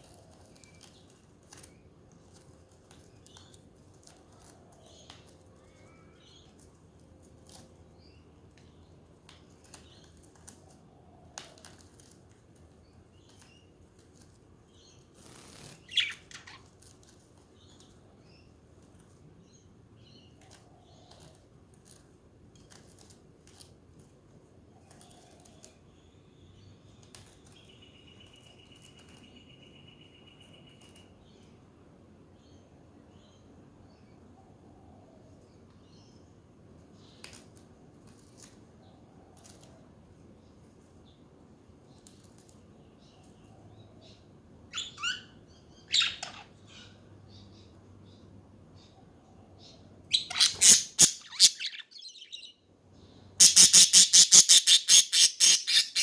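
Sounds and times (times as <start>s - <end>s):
budgerigars clicking and rustling: 6.4s - 18.1s, 50.1s - 52.5s, 53.4s - 56.0s
wings flapping: 15.1s - 17.2s
sharp bird chirp: 50.1s - 52.6s, 53.4s - 56.0s.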